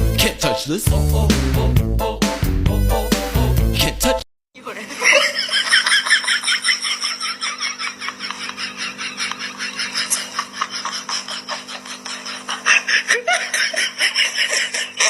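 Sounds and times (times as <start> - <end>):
music: 0.0 - 4.2
rapid laughter: 4.8 - 15.0.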